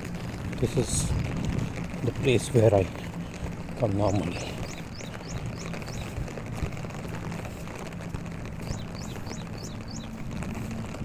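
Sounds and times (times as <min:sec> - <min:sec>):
low hum: 0:00.0 - 0:11.0
bird calling: 0:02.9 - 0:06.3, 0:08.6 - 0:10.8.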